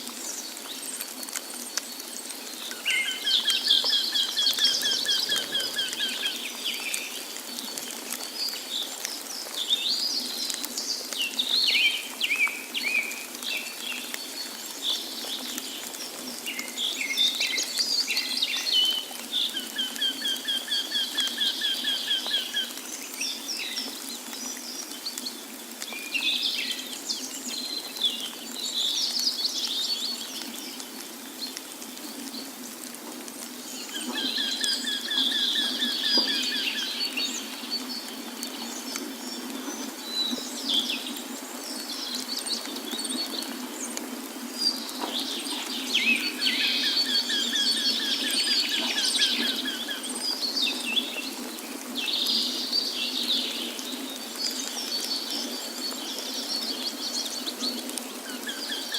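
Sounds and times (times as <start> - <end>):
falling water rushing: 0.0 - 27.1
songbirds singing and chirping: 0.0 - 58.9.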